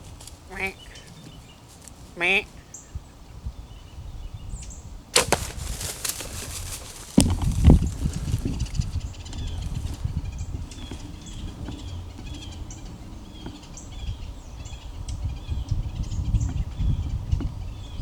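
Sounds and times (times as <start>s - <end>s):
bird chirping: 0.0s - 18.0s
low rumble on microphone: 3.0s - 18.0s
low crashing of deer bolting: 5.2s - 10.1s.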